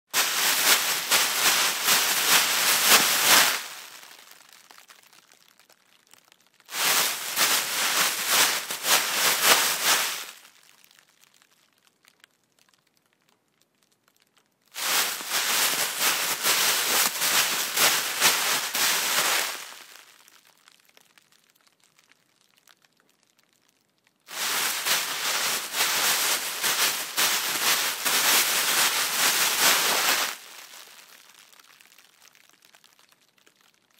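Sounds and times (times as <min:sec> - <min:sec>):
plastic bag rustling: 0:00.2 - 0:04.4, 0:06.7 - 0:10.7, 0:14.8 - 0:20.3, 0:24.3 - 0:31.3.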